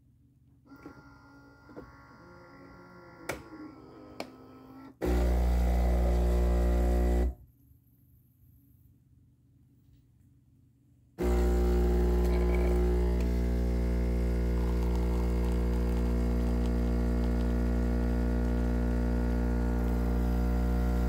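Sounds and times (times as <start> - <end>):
espresso machine pump humming: 5.0 - 7.3, 11.2 - 21.0.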